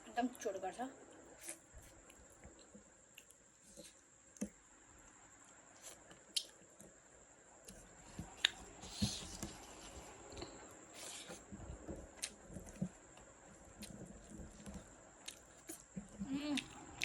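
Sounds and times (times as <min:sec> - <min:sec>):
wet squishing and chewing: 0:12.1 - 0:17.0.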